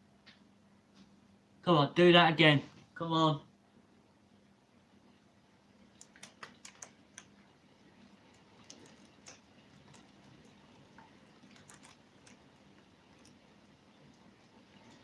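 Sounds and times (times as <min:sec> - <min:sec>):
faint sharp clicks and taps: 0:05.8 - 0:15.0.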